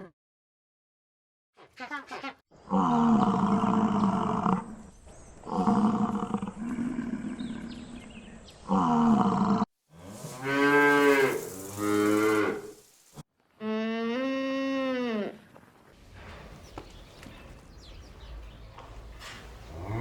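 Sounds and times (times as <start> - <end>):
cattle mooing: 10.0 - 12.8.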